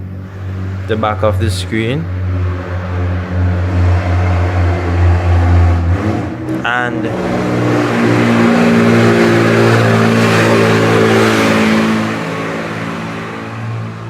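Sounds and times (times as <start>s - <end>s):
rushing road noise: 0.0s - 14.0s
truck engine passing: 0.0s - 14.0s.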